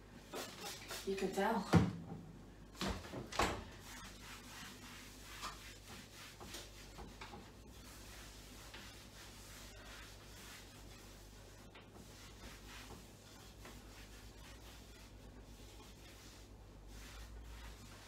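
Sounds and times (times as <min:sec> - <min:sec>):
cloth rubbing a surface: 0:03.7 - 0:18.0.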